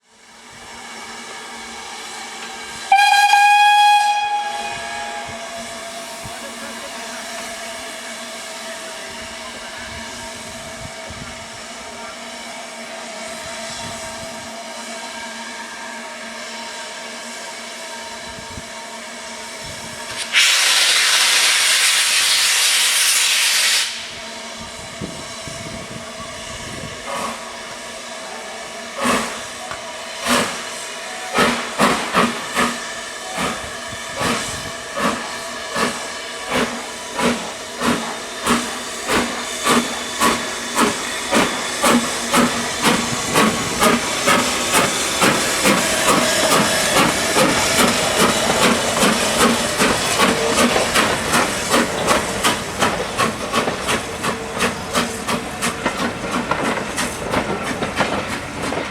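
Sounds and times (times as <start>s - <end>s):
steam locomotive exhaust chuffs: 0.2s - 58.9s
steam blast hissing: 19.5s - 58.9s.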